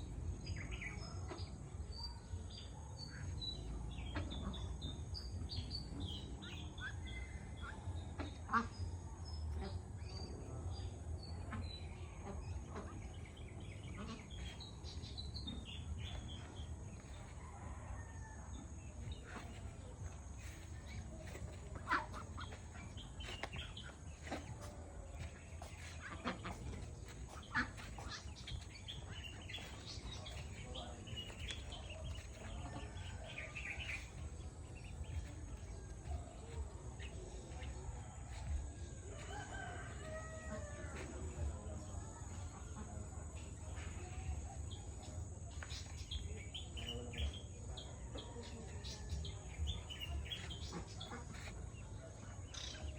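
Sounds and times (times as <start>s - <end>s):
birds chirping: 0.0s - 40.8s, 41.7s - 52.9s
steady low rumble: 18.5s - 39.2s.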